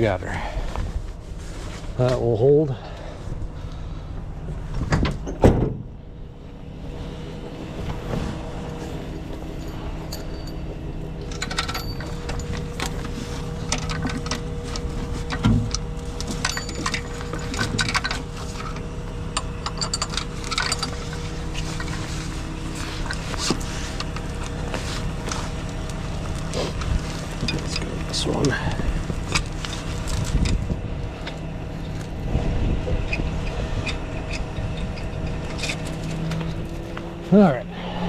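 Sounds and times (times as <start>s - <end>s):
truck engine humming: 6.0s - 38.0s
metal rigging clinking and rattling: 8.4s - 32.4s, 33.0s - 37.4s.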